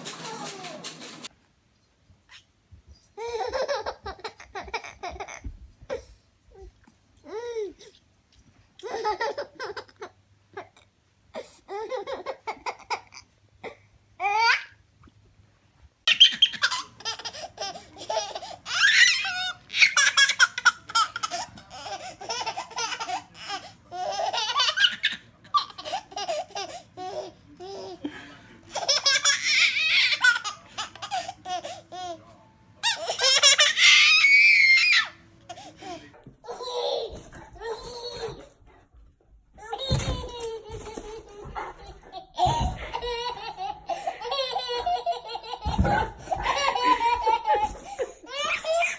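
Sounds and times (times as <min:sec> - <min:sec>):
baby laughing: 0:03.2 - 0:06.1, 0:08.8 - 0:10.8, 0:16.1 - 0:32.2, 0:32.8 - 0:34.2, 0:39.6 - 0:48.9.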